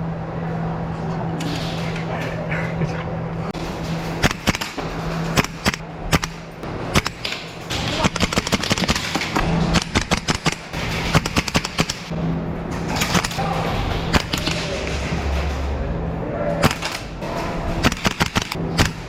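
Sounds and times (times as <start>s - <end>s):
airsoft gun firing: 5.4s - 12.1s, 17.8s - 19.0s.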